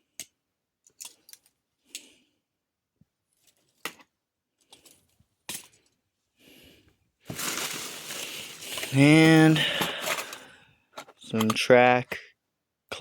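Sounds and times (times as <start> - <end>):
rustling: 7.3 - 10.5.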